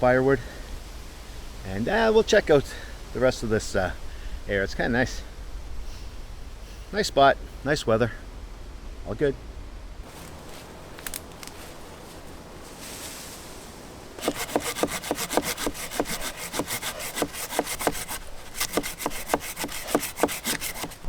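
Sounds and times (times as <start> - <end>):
soft wind: 0.0 - 21.0
hand saw cutting wood: 14.2 - 21.0.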